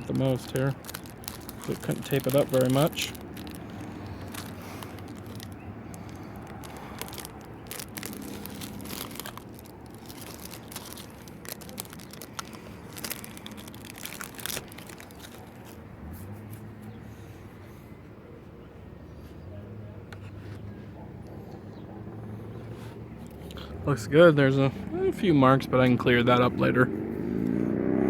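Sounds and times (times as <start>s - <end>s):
adhesive tape crinkling: 0.0s - 16.9s.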